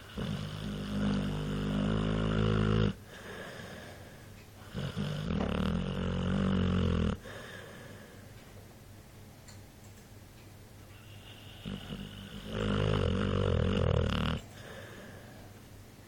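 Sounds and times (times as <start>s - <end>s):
pet snoring: 0.0s - 3.9s, 4.6s - 7.6s, 10.9s - 15.0s
pet breathing quietly: 0.0s - 8.6s, 10.9s - 15.7s.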